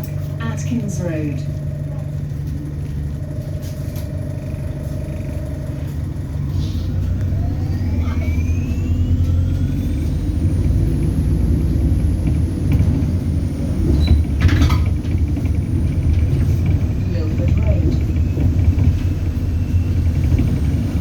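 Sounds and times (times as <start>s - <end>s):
bus drivetrain rumble: 0.0s - 21.0s
rising motor whine: 1.3s - 14.4s
high turbo whistle: 3.7s - 10.4s.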